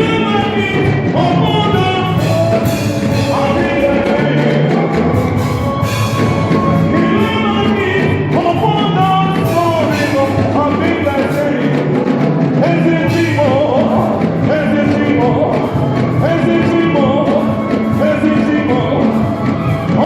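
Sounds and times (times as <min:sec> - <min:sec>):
church singing with band: 0:00.0 - 0:20.0.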